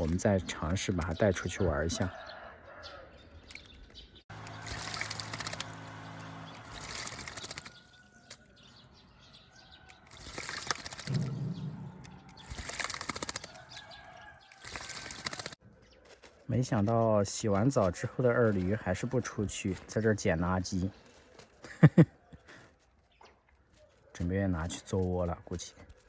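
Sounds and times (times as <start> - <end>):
bird splashing in water: 4.3 - 7.9, 10.1 - 11.4, 12.1 - 15.6.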